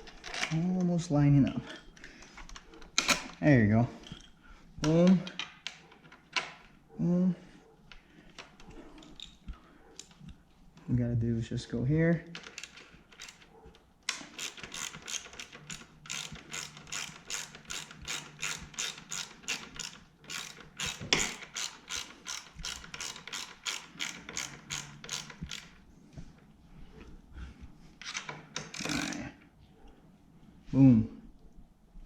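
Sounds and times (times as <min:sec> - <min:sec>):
ratchet wrench clicking: 0:14.1 - 0:25.7, 0:28.6 - 0:29.2.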